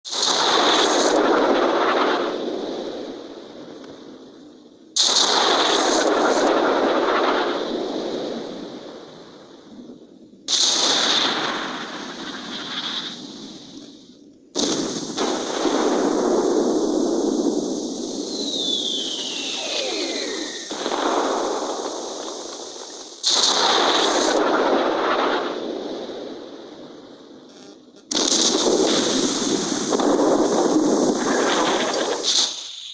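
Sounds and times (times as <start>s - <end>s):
artillery shots rumbling: 5.0s - 9.4s, 10.5s - 13.9s, 14.6s - 27.0s, 28.0s - 32.5s
falling shell whistle: 18.0s - 20.9s.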